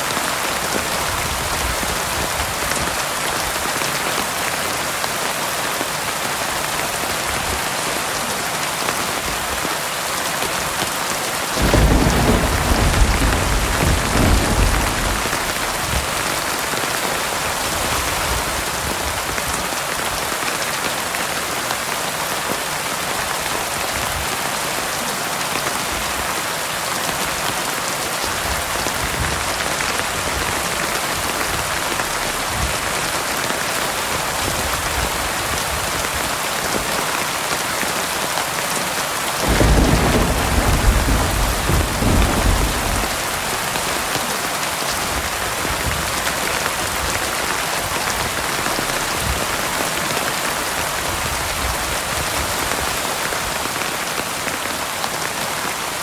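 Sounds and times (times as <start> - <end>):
heavy rain falling: 0.0 - 56.0
low roll of thunder: 11.6 - 16.8, 39.4 - 44.2.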